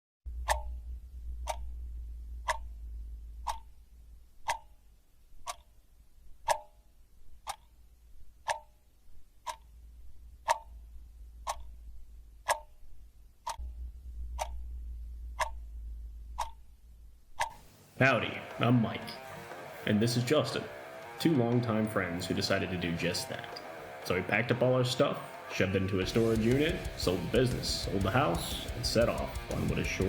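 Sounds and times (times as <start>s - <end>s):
low rumble: 0.3s - 4.4s, 13.6s - 17.4s
clock ticking: 0.3s - 30.0s.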